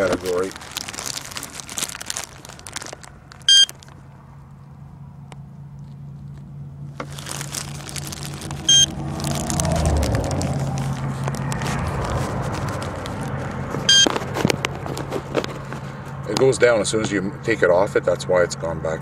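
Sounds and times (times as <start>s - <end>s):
crinkly handling noise: 0.0s - 4.7s, 5.8s - 16.5s
low vehicle engine hum: 0.0s - 19.0s
short electronic beeps: 3.5s - 3.7s, 8.7s - 8.9s, 13.9s - 14.1s.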